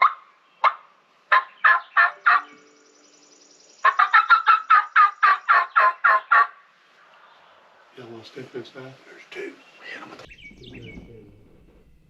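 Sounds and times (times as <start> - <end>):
turkey gobble: 0.0 - 2.5, 3.8 - 6.6
turkeys calling: 0.0 - 2.8, 3.8 - 8.4, 9.0 - 11.8.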